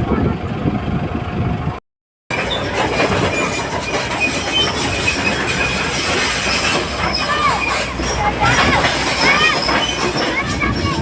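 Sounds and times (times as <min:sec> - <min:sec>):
excavator tracks clanking and squealing: 0:02.3 - 0:11.0.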